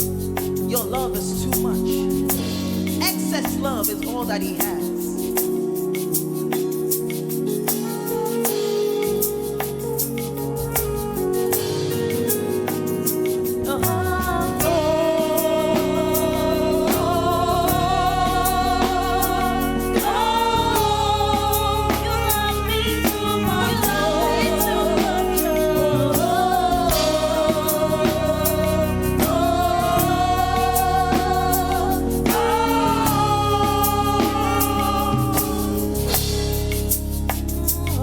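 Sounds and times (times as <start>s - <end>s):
steady drum beat: 0.0s - 38.0s
sustained keyboard chords: 0.0s - 38.0s
singers holding long notes: 9.8s - 38.0s.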